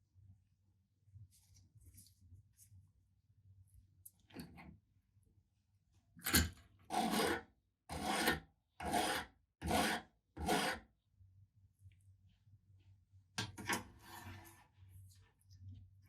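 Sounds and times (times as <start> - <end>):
rasping filing strokes: 6.9 - 10.8.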